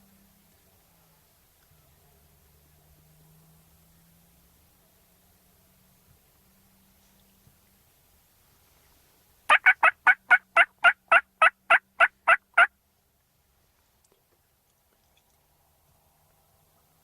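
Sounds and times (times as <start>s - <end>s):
turkey yelps: 9.5s - 12.7s.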